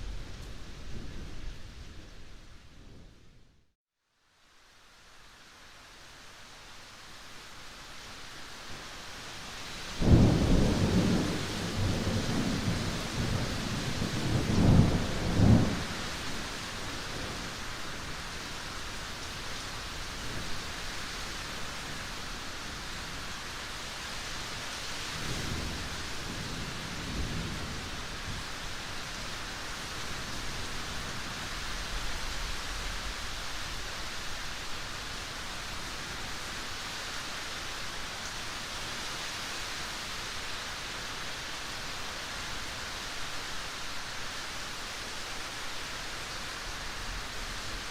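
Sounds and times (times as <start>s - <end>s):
steady rain hiss: 0.0s - 3.5s, 4.1s - 47.9s
thunder rumbling: 10.0s - 16.2s.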